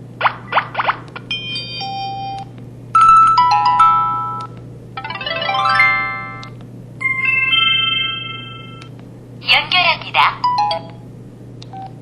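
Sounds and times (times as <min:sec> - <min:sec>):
faint steady hum: 0:00.0 - 0:12.0
electronic chime jingles: 0:07.0 - 0:08.8.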